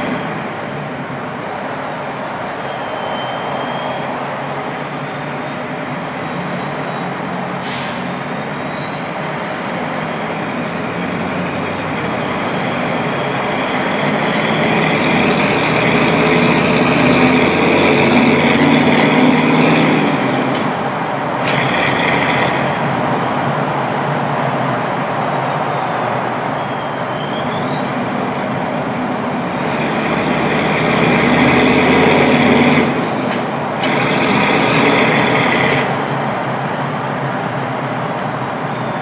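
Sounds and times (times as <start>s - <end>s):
diesel engine drone: 0.0s - 39.0s
turbo whistle: 2.5s - 9.3s, 26.4s - 30.6s.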